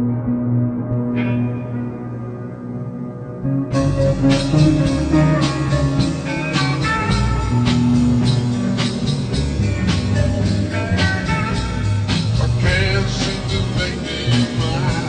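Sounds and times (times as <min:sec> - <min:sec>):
instrumental band music: 0:03.5 - 0:15.0.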